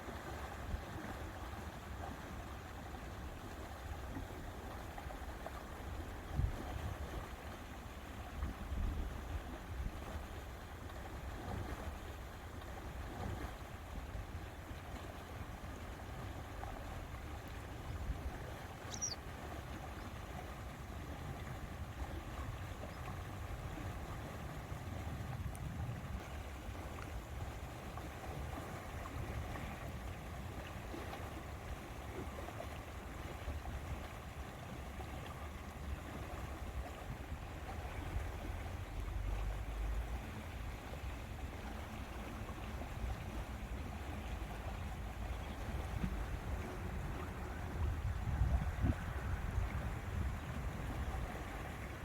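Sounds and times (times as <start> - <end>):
lake water lapping: 0.0 - 52.0
wind gusting on microphone: 24.4 - 26.4, 45.8 - 52.0.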